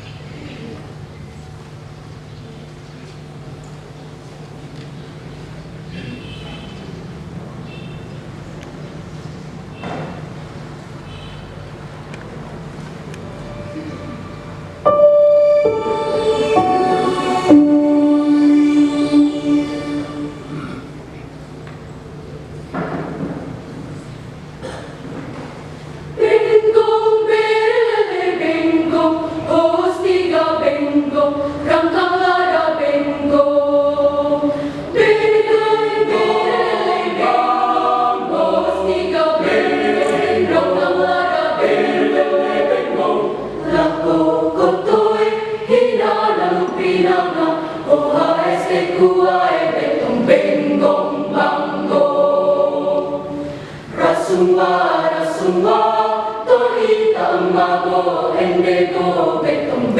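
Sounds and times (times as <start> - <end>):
choir singing: 13.6 - 20.8, 26.2 - 59.9.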